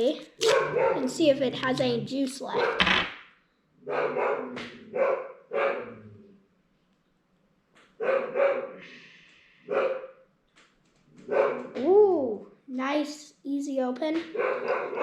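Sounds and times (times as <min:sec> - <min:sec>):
dog barking: 0:00.4 - 0:01.8, 0:02.5 - 0:02.8, 0:03.8 - 0:06.1, 0:08.0 - 0:08.9, 0:09.6 - 0:10.2, 0:11.2 - 0:11.8, 0:14.3 - 0:15.0.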